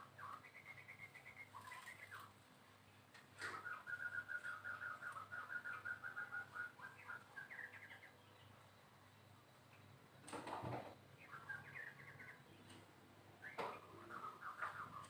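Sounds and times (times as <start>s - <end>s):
bird singing whistled notes: 0.0s - 2.3s, 3.4s - 8.9s, 11.1s - 12.8s, 13.4s - 15.0s.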